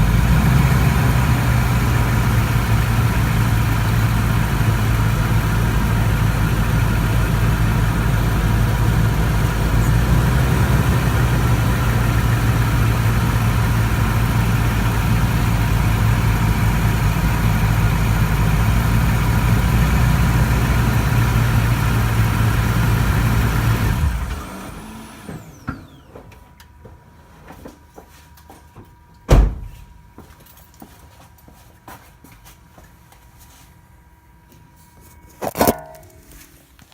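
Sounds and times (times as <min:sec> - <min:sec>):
pickup truck engine running: 0:00.0 - 0:26.1
sharp loud knock: 0:29.3 - 0:29.8.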